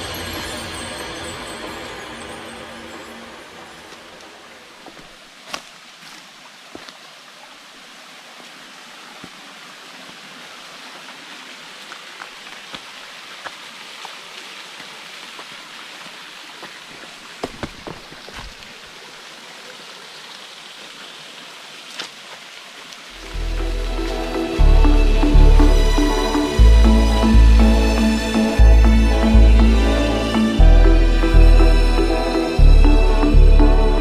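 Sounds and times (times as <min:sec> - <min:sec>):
rushing water: 0:00.0 - 0:34.0
background music: 0:23.2 - 0:34.0.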